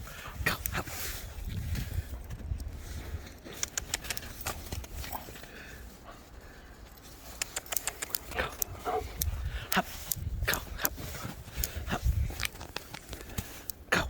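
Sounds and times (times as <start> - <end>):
short clicks and crunches: 3.5 - 5.1, 7.3 - 13.8.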